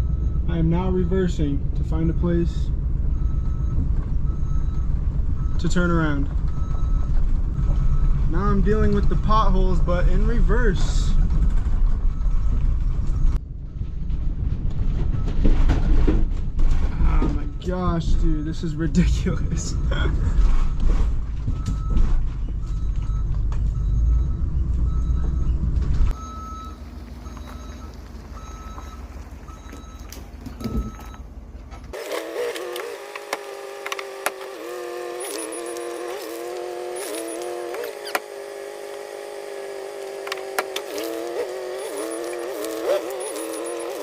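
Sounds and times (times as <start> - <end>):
backup alarm beeping: 0.0 - 1.7, 3.0 - 8.9, 11.9 - 13.8, 19.3 - 31.4
bus engine rumbling: 0.0 - 44.0.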